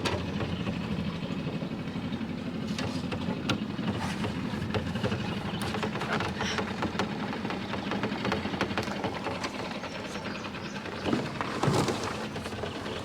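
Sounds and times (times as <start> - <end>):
outboard motor running: 0.0 - 13.0.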